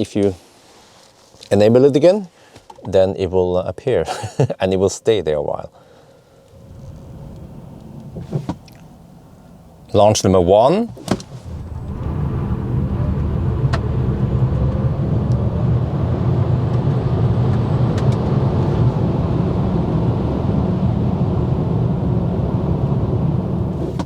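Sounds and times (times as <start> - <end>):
road and tyre rumble: 6.3 - 24.0.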